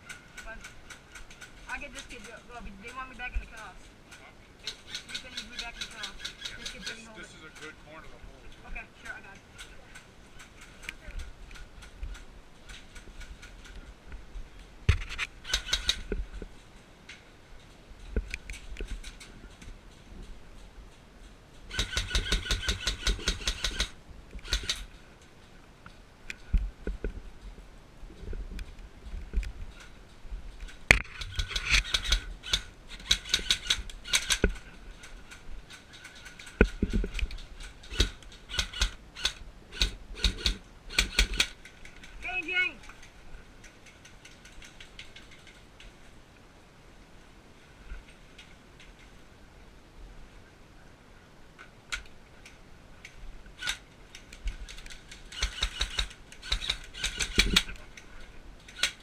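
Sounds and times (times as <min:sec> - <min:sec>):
airsoft gunshots clicking: 0:21.7 - 0:24.9, 0:37.8 - 0:41.7.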